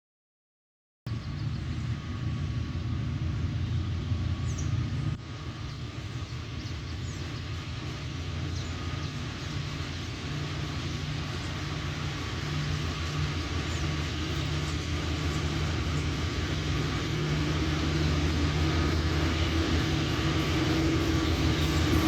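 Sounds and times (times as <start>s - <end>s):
freight train passing: 1.1s - 22.0s.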